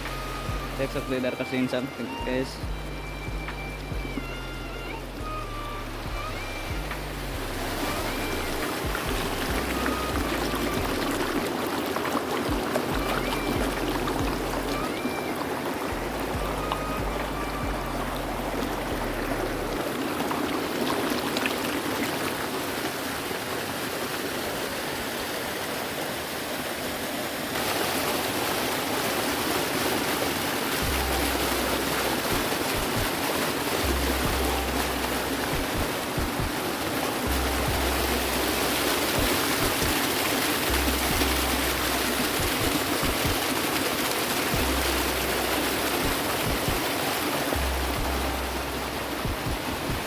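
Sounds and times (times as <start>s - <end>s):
background music with bass: 0.0s - 11.5s, 12.4s - 20.0s, 30.8s - 33.2s, 33.8s - 36.6s, 37.2s - 40.0s, 40.6s - 43.4s, 44.4s - 46.9s, 47.6s - 50.0s
water rushing from waterfall: 0.0s - 50.0s.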